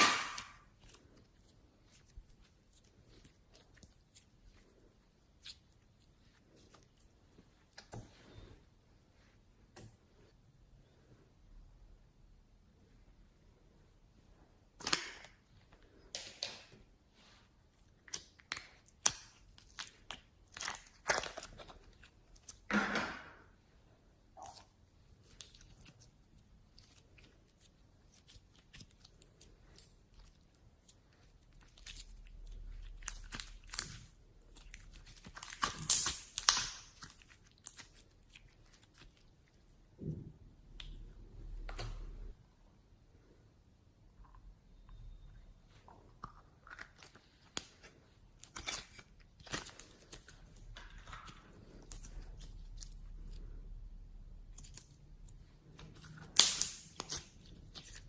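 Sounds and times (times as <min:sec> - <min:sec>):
slime crackling and popping: 0:00.0 - 0:04.6, 0:18.0 - 0:22.7, 0:24.4 - 0:39.7, 0:46.8 - 0:53.4, 0:54.5 - 0:58.0.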